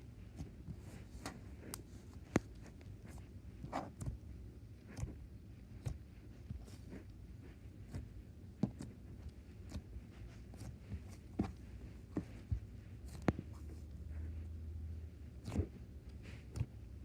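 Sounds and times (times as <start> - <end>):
slime clicking and squishing: 7.8 - 13.8, 15.3 - 16.9.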